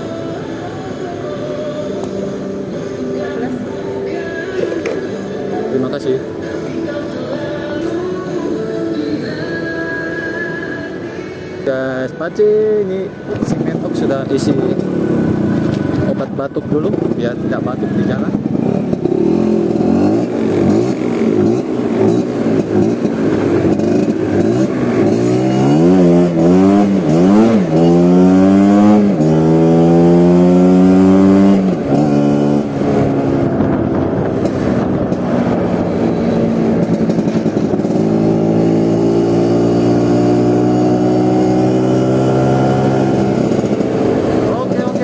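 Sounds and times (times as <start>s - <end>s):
scooter engine accelerating: 11.6s - 45.0s.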